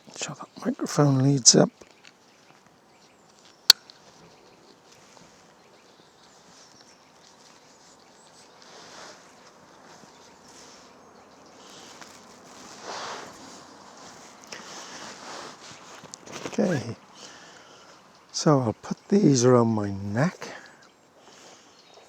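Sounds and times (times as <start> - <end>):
quiet outdoor background: 0.0 - 22.0
rustling of recording gear: 1.5 - 17.4.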